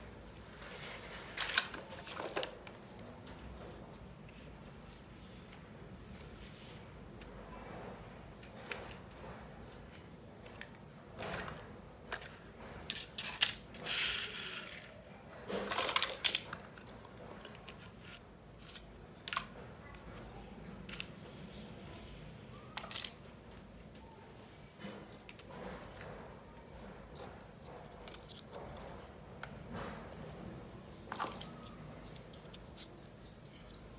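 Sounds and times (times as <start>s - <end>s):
plastic pieces clicking: 15.7s - 16.7s.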